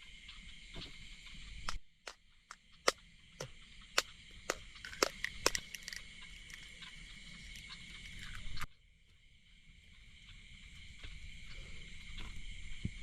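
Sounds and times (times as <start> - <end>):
frogs croaking: 0.0 - 13.0
insects chirping: 0.0 - 13.0
sharp clicks: 1.7 - 2.2, 4.0 - 8.7.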